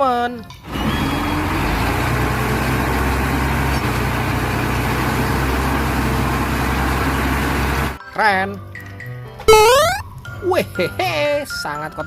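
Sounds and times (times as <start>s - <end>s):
truck engine idling: 0.6s - 8.0s.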